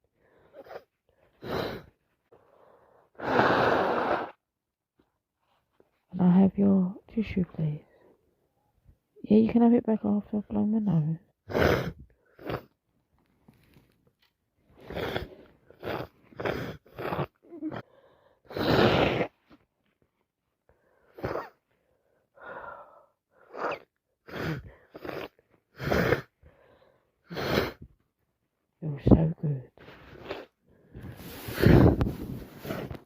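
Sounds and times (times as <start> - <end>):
woman blowing nose: 0.5 - 2.0, 3.2 - 4.4, 11.5 - 12.7, 18.5 - 19.5, 21.1 - 21.6, 23.4 - 26.3, 27.2 - 27.9, 30.0 - 30.5, 31.1 - 33.0.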